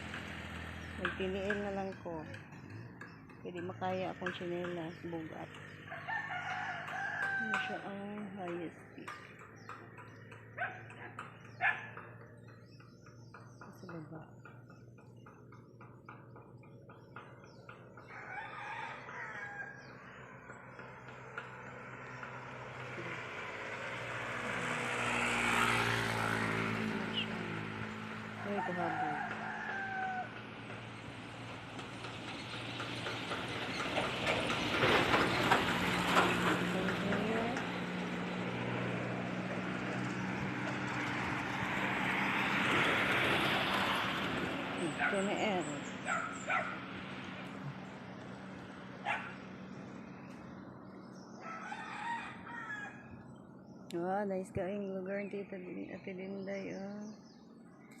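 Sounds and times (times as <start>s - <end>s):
diesel engine running: 0.0s - 6.1s, 19.9s - 51.4s
rooster crowing: 5.9s - 7.8s, 18.1s - 20.1s, 28.5s - 30.4s, 51.4s - 53.1s.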